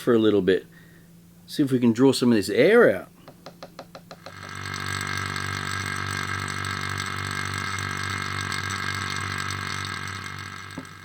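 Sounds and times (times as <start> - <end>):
vacuum pump humming: 3.2 - 11.0.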